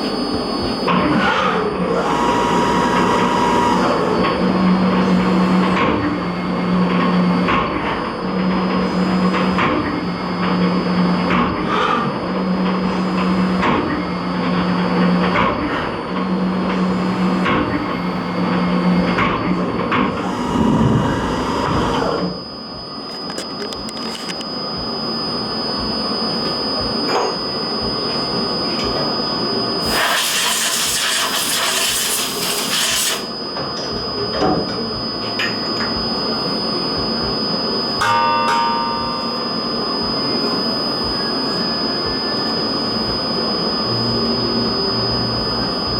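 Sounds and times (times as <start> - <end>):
steady high whine: 0.0 - 45.9
low pulsing hum: 11.2 - 29.9.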